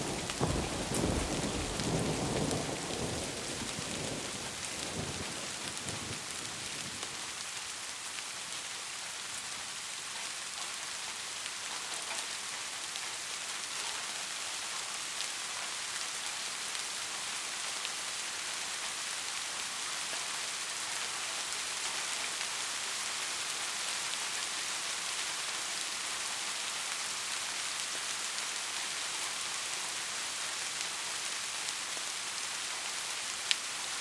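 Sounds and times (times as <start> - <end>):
heavy rain on a roof: 0.0 - 34.0.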